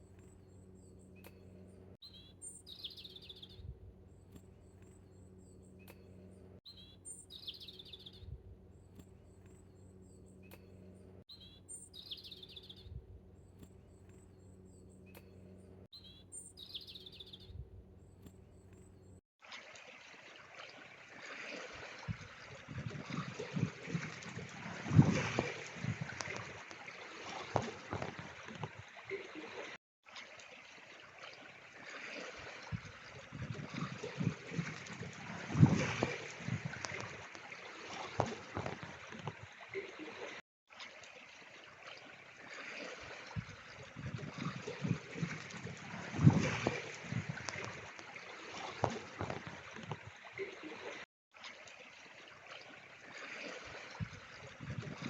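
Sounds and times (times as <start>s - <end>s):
faint steady hum: 0.0s - 19.2s
songbird singing high phrase: 2.0s - 6.1s, 6.7s - 8.4s, 9.6s - 13.0s, 16.0s - 17.6s.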